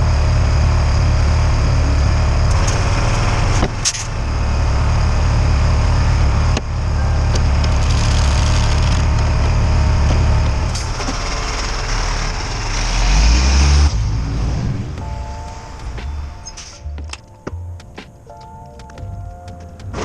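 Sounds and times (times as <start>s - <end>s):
forklift engine running: 0.0s - 18.2s.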